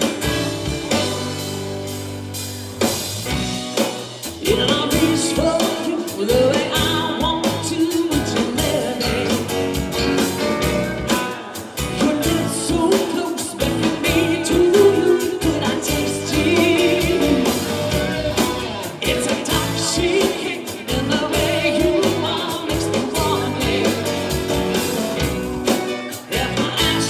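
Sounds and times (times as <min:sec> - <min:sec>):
country band playing: 0:00.0 - 0:27.0
drum kit: 0:00.0 - 0:27.0
person singing lead: 0:04.4 - 0:09.8, 0:10.5 - 0:25.0, 0:26.1 - 0:27.0.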